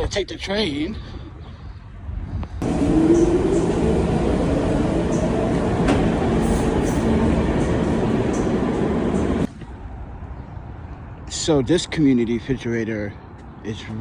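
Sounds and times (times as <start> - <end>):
subway train rumbling: 2.6 - 9.5.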